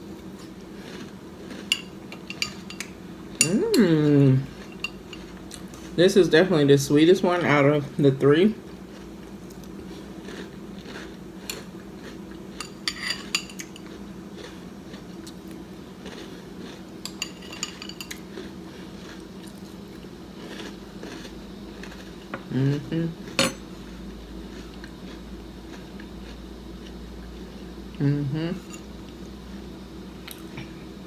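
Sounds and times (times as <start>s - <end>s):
spoon clinking against bowl: 1.7s - 3.6s.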